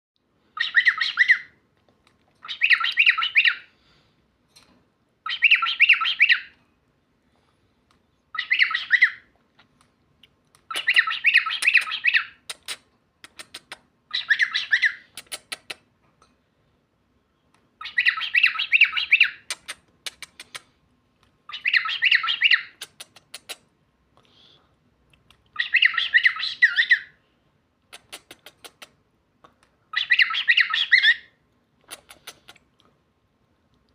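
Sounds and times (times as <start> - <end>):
cockatiel chattering: 10.7 - 15.8, 17.8 - 20.7
sharp clicks: 12.5 - 13.9, 19.5 - 21.3, 27.9 - 29.6.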